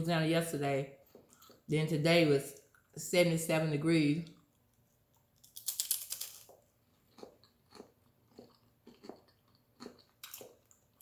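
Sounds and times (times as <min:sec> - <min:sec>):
open-mouth chewing: 0:01.0 - 0:01.7, 0:05.7 - 0:11.0
crunching bite: 0:05.5 - 0:10.8.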